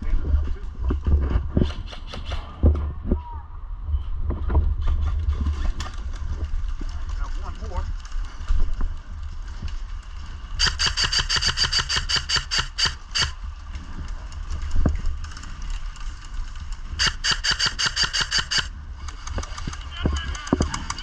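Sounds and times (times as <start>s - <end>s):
airsoft gun firing bursts: 10.6s - 13.4s, 17.0s - 21.0s.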